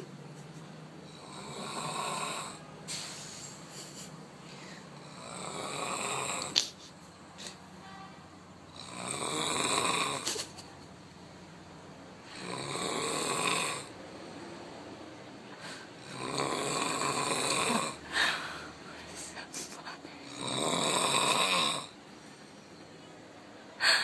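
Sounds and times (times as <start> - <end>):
rasping snores: 1.1 - 2.6, 5.0 - 6.8, 8.7 - 10.3, 12.2 - 14.0, 15.9 - 18.1, 20.2 - 22.0.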